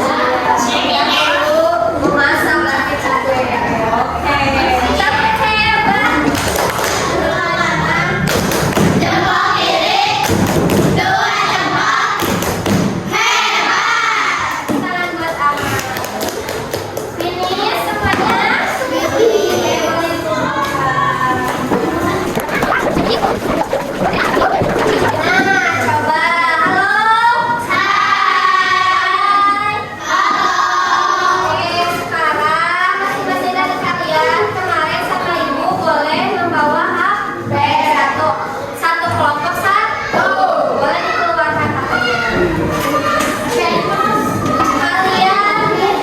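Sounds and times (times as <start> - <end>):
children chattering and singing: 0.0 - 14.7, 16.4 - 46.0
thumps: 21.6 - 25.7
children singing: 21.7 - 26.1.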